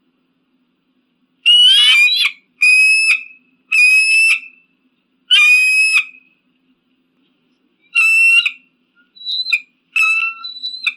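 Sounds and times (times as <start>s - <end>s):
eagle whistling cries: 1.5s - 4.6s, 5.3s - 6.3s, 7.8s - 10.9s.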